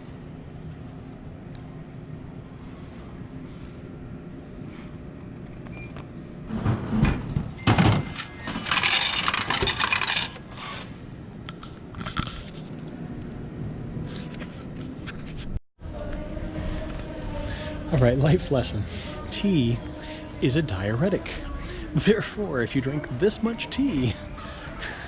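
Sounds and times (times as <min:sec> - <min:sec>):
vending machine clunking and clattering: 0:06.5 - 0:10.5.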